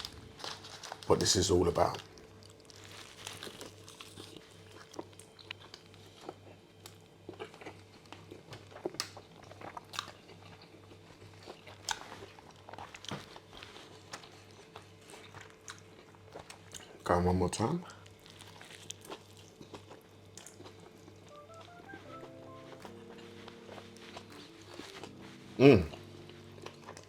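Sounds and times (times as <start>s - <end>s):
person chewing burger: 1.8s - 17.0s, 17.8s - 27.0s.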